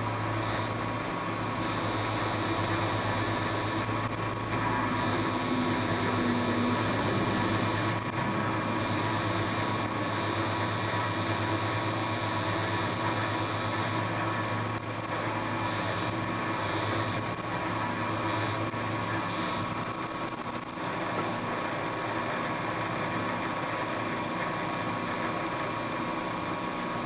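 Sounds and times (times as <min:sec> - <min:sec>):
milling machine cutting metal: 0:00.0 - 0:20.8
motor hum: 0:00.0 - 0:21.0.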